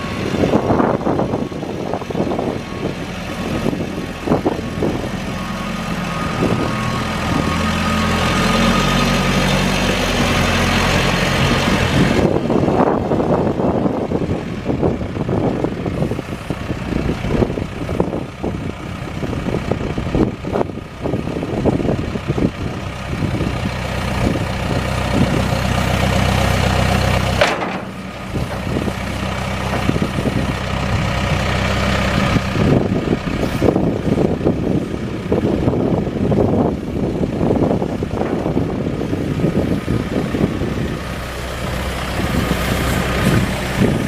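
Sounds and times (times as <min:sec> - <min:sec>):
backhoe diesel engine running: 0:00.0 - 0:44.0
knocks and clanks: 0:27.3 - 0:30.2.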